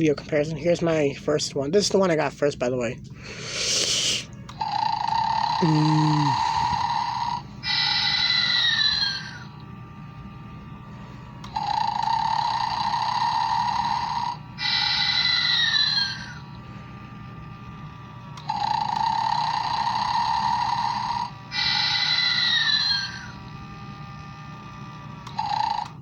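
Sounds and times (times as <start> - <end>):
toy figure playing recorded snore: 3.2 - 9.5, 11.4 - 16.4, 18.4 - 23.4, 25.2 - 26.0.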